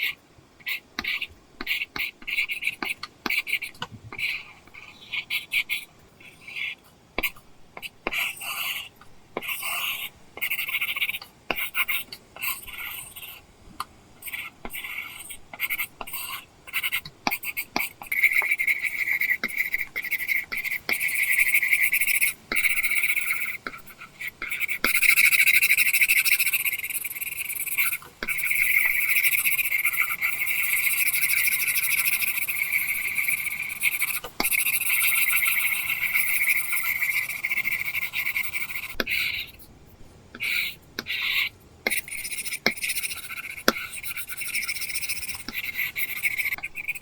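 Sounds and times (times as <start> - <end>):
stylus scratching on textured screen: 0.0 - 13.5, 14.2 - 47.0.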